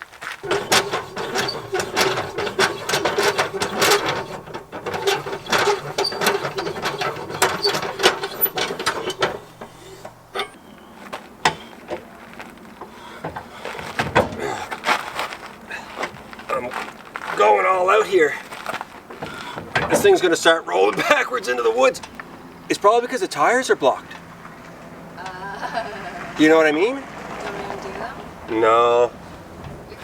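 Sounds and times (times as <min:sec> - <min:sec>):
rapid clicking: 0:00.4 - 0:10.3
trailer jack gear whir: 0:00.4 - 0:11.8.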